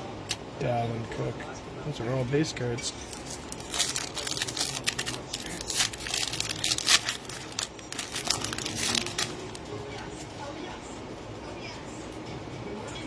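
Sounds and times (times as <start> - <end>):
foil wrapper crinkling and tearing: 3.0 - 9.7.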